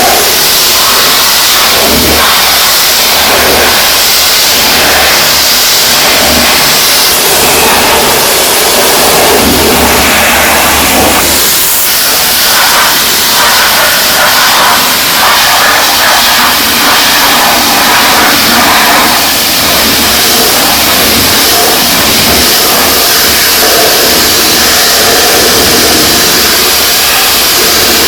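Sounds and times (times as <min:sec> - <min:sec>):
pressure washer spraying: 0:00.0 - 0:28.0.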